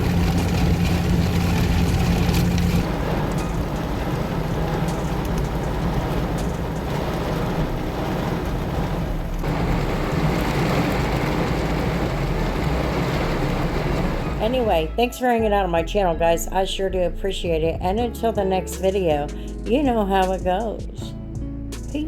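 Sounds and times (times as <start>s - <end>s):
rain pelting a car: 0.0s - 14.8s
engine and road drone: 0.0s - 15.1s.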